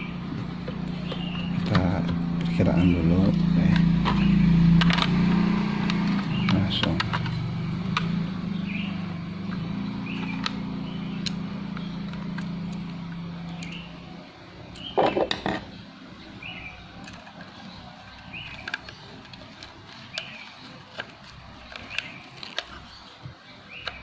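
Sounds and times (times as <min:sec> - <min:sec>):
plastic and metal parts clicking: 0:17.0 - 0:23.2.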